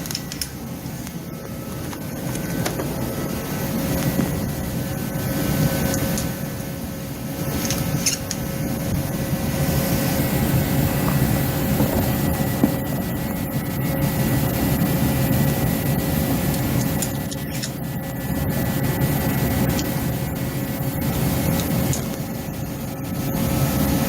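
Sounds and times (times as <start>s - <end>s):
space heater humming: 0.0s - 24.0s.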